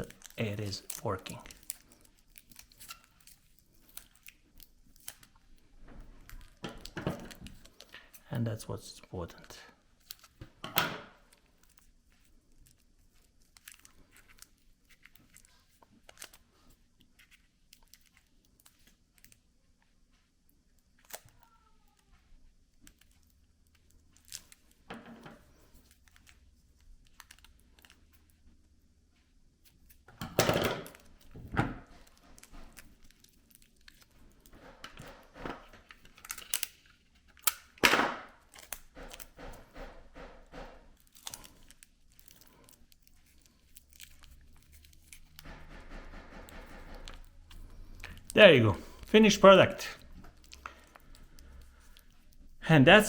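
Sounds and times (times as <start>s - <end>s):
wrapping material crinkling: 0.0s - 10.4s, 11.2s - 24.8s, 25.4s - 28.4s, 32.0s - 34.6s, 35.6s - 37.8s, 40.8s - 45.4s.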